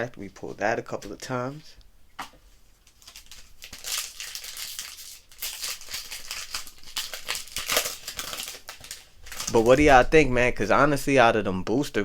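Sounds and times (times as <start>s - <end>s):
card packaging crinkling: 2.8s - 10.8s.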